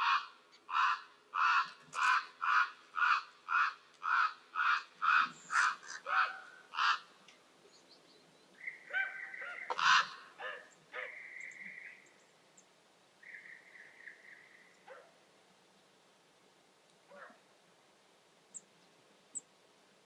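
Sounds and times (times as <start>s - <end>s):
wild birds calling: 0.0s - 15.2s.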